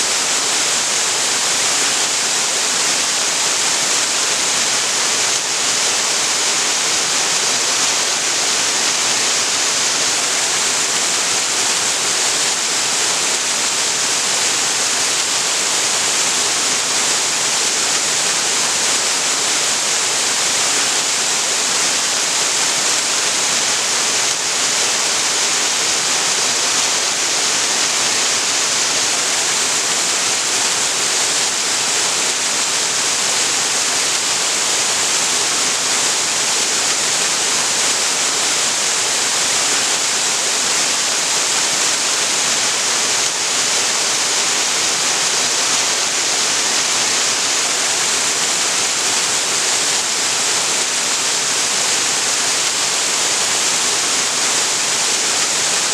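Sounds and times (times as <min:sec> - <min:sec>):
waterfall rushing: 0:00.0 - 0:55.9.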